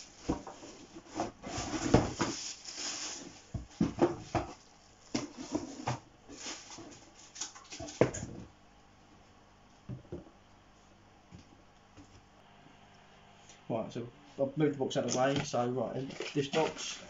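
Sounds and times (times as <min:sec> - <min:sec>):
cardboard boxes knocking and scuffing: 0:00.2 - 0:07.0.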